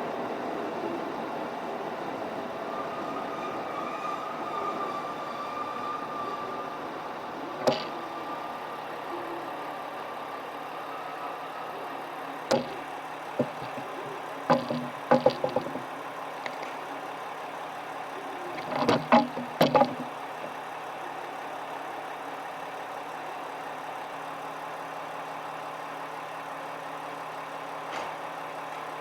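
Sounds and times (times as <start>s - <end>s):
train machinery humming: 0.0s - 29.0s
sharp clicks or knocks: 7.6s - 8.0s, 12.5s - 12.8s, 13.4s - 16.7s, 18.6s - 20.1s.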